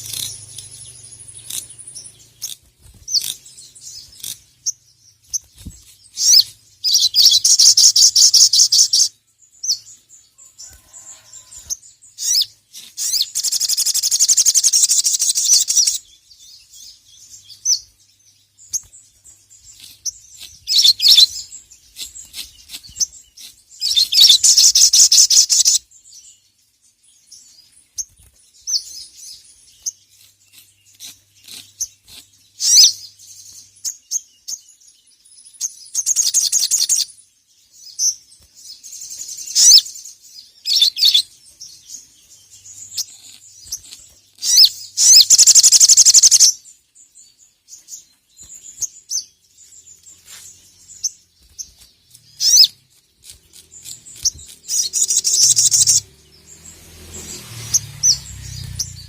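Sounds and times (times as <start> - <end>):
bird chirps: 0.0 - 59.0
bird chattering trills: 19.7 - 25.8, 42.7 - 46.6, 52.3 - 56.1.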